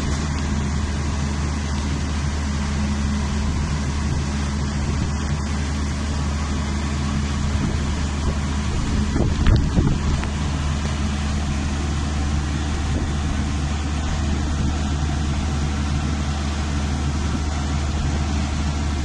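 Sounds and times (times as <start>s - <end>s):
car engine running: 0.0s - 19.0s.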